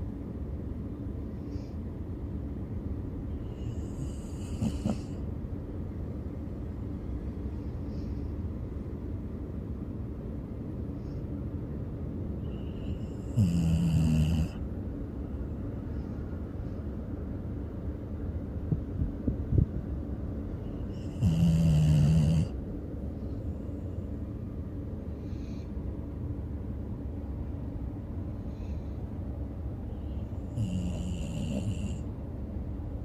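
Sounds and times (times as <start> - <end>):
soft breaths: 1.2 - 2.0, 7.4 - 8.7, 20.6 - 26.4, 28.1 - 32.1
person snoring: 3.8 - 5.1, 13.3 - 14.6, 21.0 - 22.5, 30.5 - 32.0
steady low rumble: 14.5 - 21.4.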